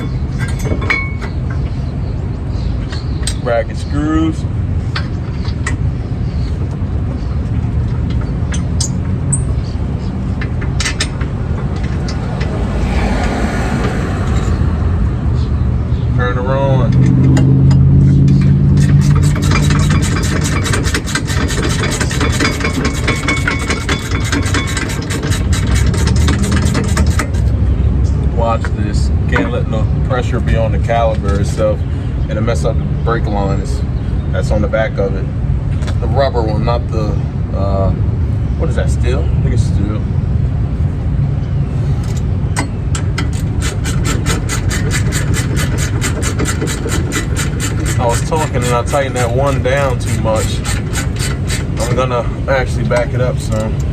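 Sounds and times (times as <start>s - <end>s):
steady low rumble: 0.0s - 19.5s
impact wrench hammering: 18.7s - 27.4s, 42.6s - 52.0s
socket ratchet clicking: 43.2s - 51.8s.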